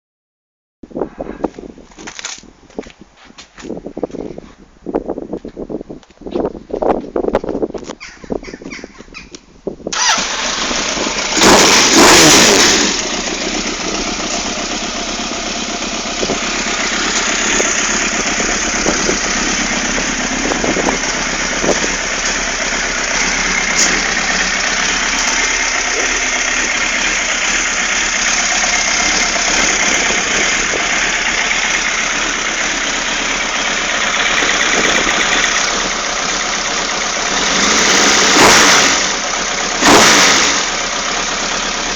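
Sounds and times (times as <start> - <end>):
motorcycle engine starting and idling: 9.9 - 41.9.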